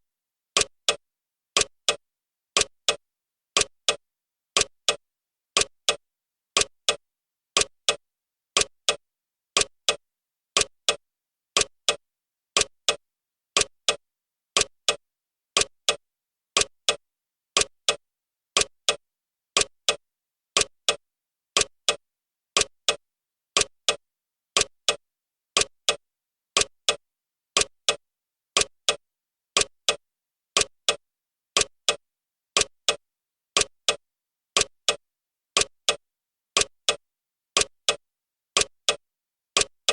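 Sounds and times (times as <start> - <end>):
clock ticking: 0.6 - 1.0, 1.6 - 2.0, 2.6 - 3.0, 3.6 - 4.0, 4.6 - 5.0, 5.6 - 6.0, 6.6 - 7.0, 7.6 - 8.0, 8.6 - 9.0, 9.6 - 10.0, 10.6 - 11.0, 11.6 - 12.0, 12.6 - 13.0, 13.6 - 14.0, 14.6 - 15.0, 15.6 - 16.0, 16.6 - 17.0, 17.6 - 18.0, 18.6 - 19.0, 19.6 - 20.0, 20.6 - 21.0, 21.6 - 22.0, 22.6 - 23.0, 23.6 - 24.0, 24.6 - 25.0, 25.6 - 26.0, 26.6 - 27.0, 27.6 - 28.0, 28.6 - 29.0, 29.6 - 30.0, 30.6 - 31.0, 31.6 - 32.0, 32.6 - 33.0, 33.6 - 34.0, 34.6 - 35.0, 35.6 - 36.0, 36.6 - 37.0, 37.6 - 38.0, 38.6 - 39.0, 39.6 - 39.9.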